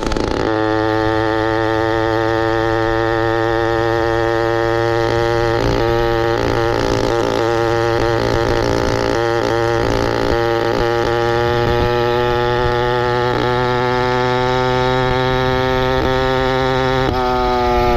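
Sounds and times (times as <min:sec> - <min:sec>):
small engine running: 0:00.0 - 0:17.9.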